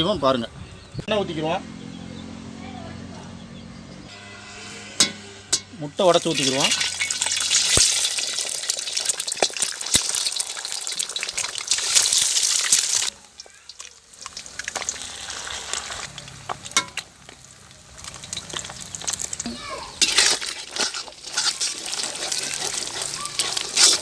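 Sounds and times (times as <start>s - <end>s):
egg sizzling in hot oil: 5.0s - 24.0s.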